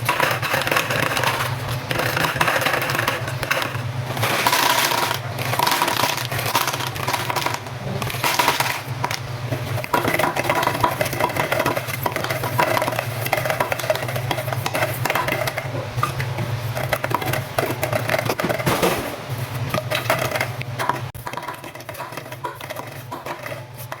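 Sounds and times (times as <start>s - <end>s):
plastic straws clattering: 0.0s - 18.8s.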